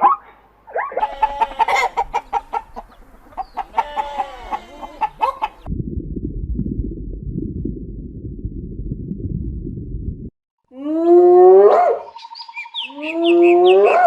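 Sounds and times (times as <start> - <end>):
small birds chirping: 0.9 - 5.7, 12.0 - 14.0
long pitched animal calls: 3.6 - 5.7
low rumbling: 5.0 - 10.4.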